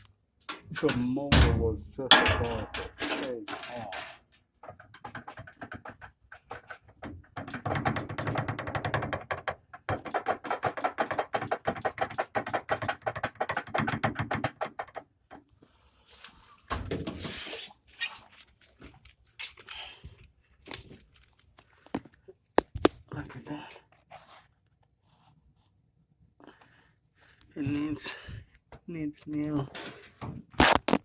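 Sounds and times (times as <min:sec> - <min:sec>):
washing machine drum knocking: 0:01.3 - 0:03.0.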